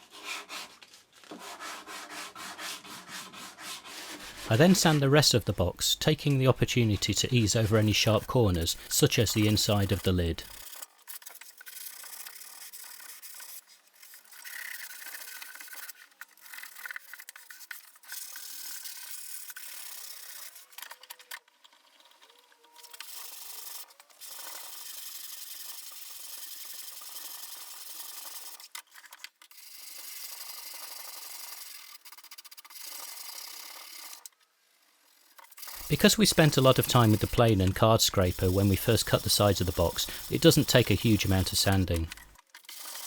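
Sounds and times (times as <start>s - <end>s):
sandpaper rubbing on wood: 0.0s - 5.5s, 6.7s - 10.8s, 35.8s - 42.3s.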